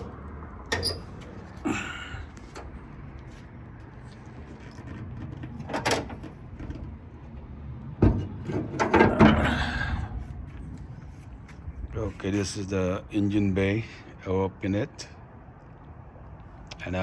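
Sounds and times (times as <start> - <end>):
car hood knocks and rattles: 8.0 - 9.4.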